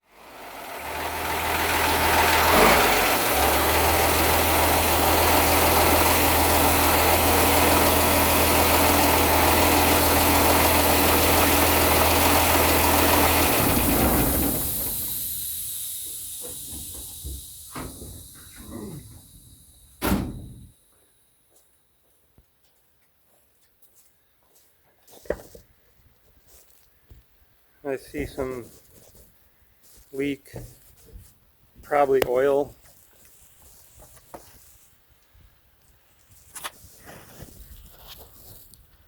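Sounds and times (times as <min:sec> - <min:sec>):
diesel truck engine running: 0:00.0 - 0:20.8
loud hiss: 0:00.4 - 0:20.7.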